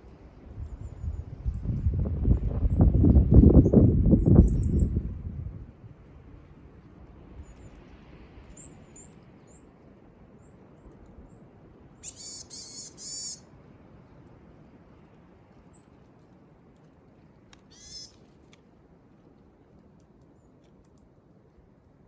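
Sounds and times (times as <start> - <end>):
faint high bird chirps: 12.0 - 13.4, 17.7 - 18.2
harsh bird calls: 12.0 - 13.4, 17.7 - 18.2.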